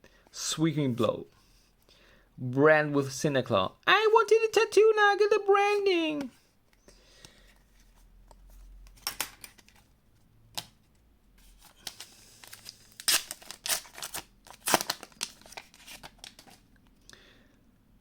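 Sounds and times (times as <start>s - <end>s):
cards and wrapper crinkling: 11.5s - 16.6s.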